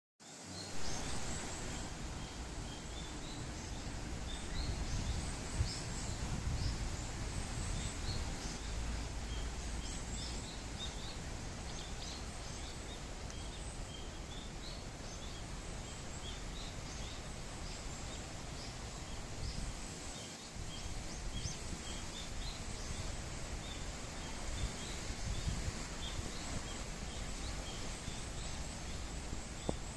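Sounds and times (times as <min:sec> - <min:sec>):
small birds chirping: 0:00.2 - 0:29.9
steady background hiss: 0:00.2 - 0:29.9
wind rumbling on microphone: 0:00.6 - 0:29.9.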